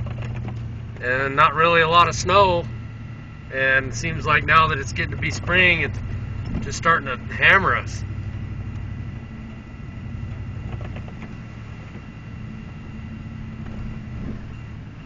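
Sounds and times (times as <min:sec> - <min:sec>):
faint steady hum: 0:00.0 - 0:15.0
blizzard wind buffeting microphone: 0:08.0 - 0:15.0.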